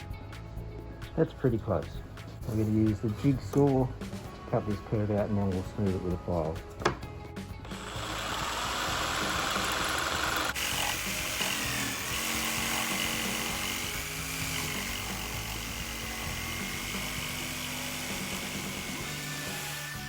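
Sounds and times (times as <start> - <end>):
background music: 0.0 - 20.0
jigsaw cutting wood: 7.6 - 20.0.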